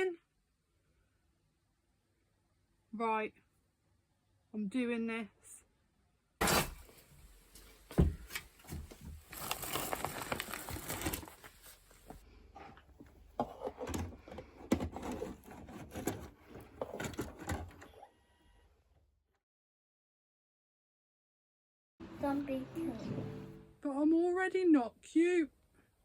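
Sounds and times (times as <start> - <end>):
objects being handled: 6.4 - 18.0.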